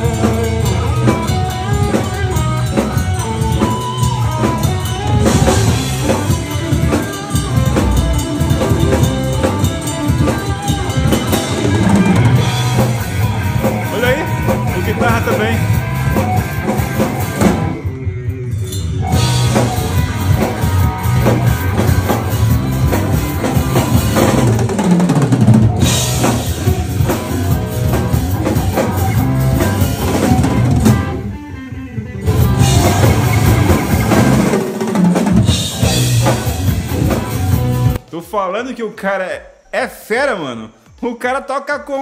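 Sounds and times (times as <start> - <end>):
heavy rock band playing: 0.0 - 38.1.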